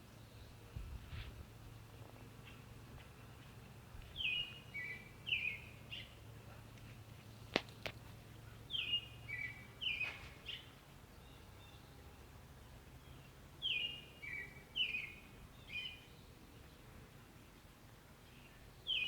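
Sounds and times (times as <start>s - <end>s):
bird chirping: 4.1s - 6.2s, 8.7s - 12.0s, 13.1s - 16.8s, 18.3s - 19.0s.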